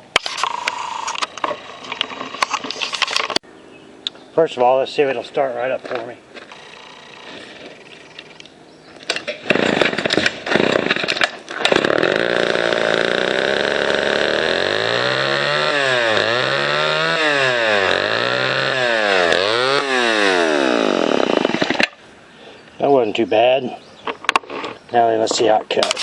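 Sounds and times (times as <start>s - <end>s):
chainsaw engine running and revving: 6.4s - 7.9s, 11.7s - 21.8s
starter cord tugs: 9.3s - 21.9s.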